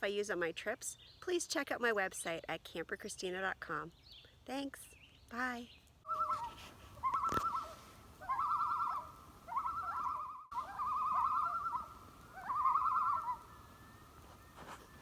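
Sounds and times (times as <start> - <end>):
faint steady whistle tone: 6.1 - 15.0
warbling bird-like call: 6.1 - 15.0.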